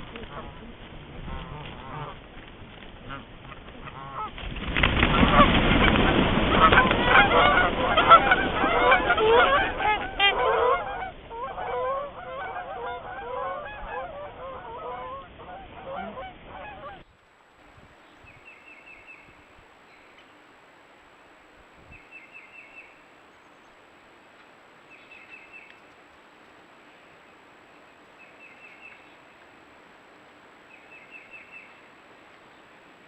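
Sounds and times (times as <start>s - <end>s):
geese honking: 0.0s - 2.3s, 3.0s - 4.4s, 5.1s - 17.1s.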